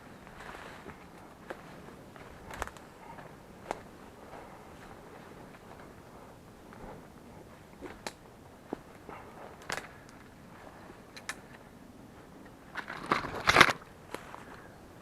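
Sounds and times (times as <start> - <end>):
footsteps on twigs and leaves: 0.0 - 6.1, 12.2 - 14.6.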